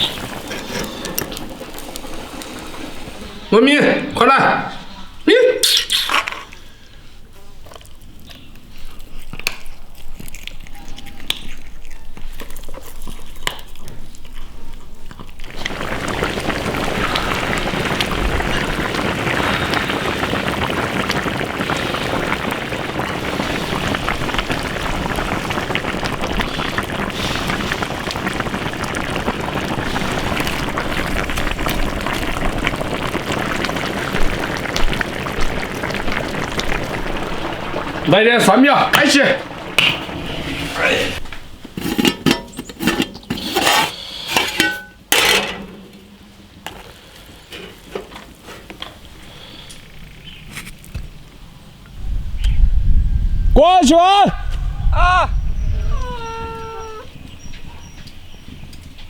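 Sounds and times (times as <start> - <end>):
stew boiling in a wok: 0.0 - 5.0, 14.8 - 51.3.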